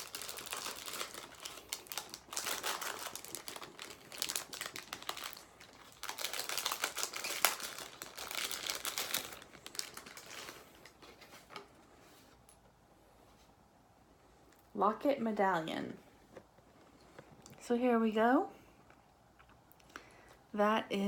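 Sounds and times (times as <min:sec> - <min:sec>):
packaging crinkling and rustling: 0:00.0 - 0:12.5.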